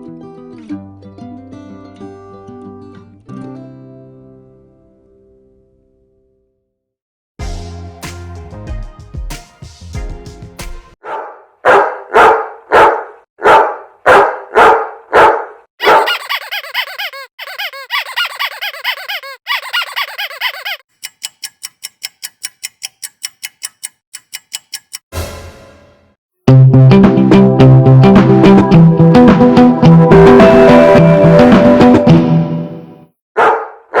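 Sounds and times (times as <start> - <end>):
dog barking: 11.0 - 16.5, 33.4 - 34.0
high squeaking: 15.8 - 21.8
rapid short clicks: 19.6 - 25.0.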